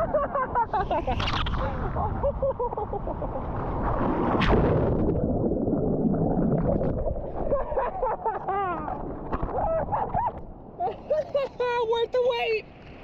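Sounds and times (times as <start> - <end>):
wind on microphone: 0.0 - 10.9.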